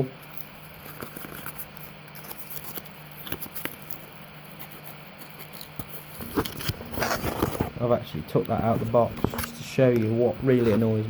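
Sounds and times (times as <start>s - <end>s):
cardboard packaging handled: 0.3s - 7.9s.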